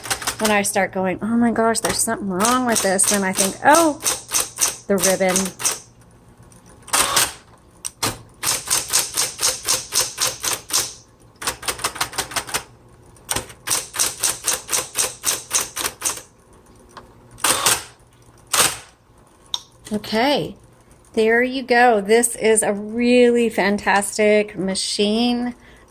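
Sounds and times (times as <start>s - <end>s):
electric typewriter key strikes: 0.0s - 0.6s, 1.8s - 5.9s, 6.9s - 12.7s, 13.3s - 16.3s, 17.4s - 19.0s.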